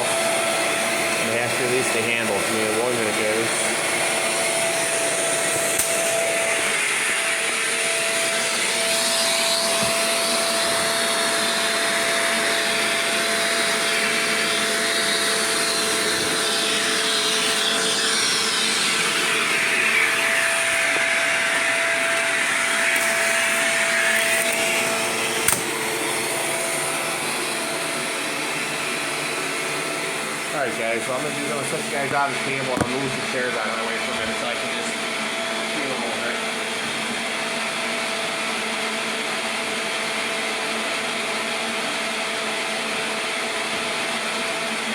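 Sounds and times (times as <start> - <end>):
vacuum cleaner running: 0.0 - 44.9
vacuum switch click: 25.4 - 25.7.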